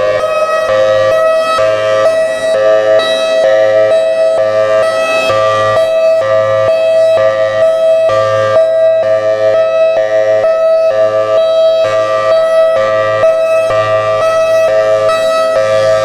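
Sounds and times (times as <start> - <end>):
two-tone warning siren: 0.0 - 16.0.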